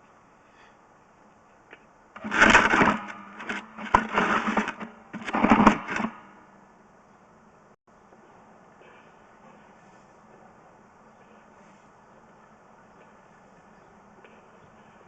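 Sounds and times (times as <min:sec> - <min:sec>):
faint steady hum: 0:00.0 - 0:15.0
cable rattling through reel: 0:02.2 - 0:06.3.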